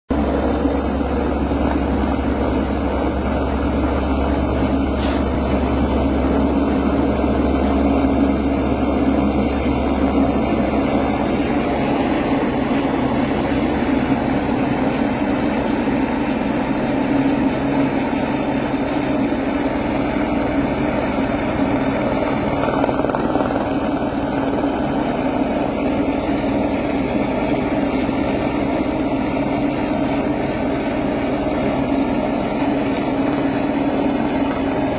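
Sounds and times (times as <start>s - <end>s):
helicopter rotor and engine: 0.1s - 34.9s.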